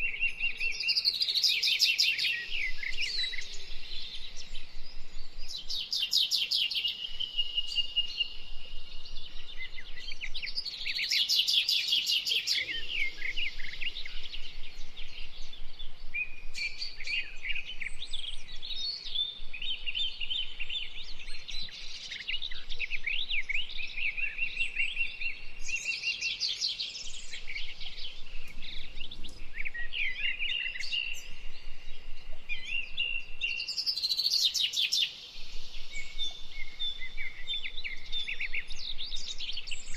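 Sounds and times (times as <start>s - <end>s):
birds chirping and trilling: 0.0s - 39.9s.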